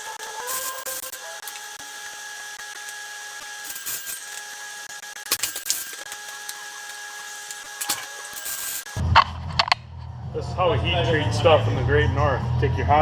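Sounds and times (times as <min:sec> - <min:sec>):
small electric machine whining: 0:00.0 - 0:09.1.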